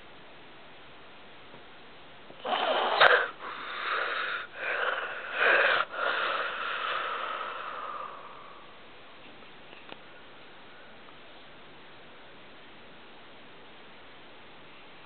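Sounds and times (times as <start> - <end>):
wheezy snoring: 2.4 - 8.6.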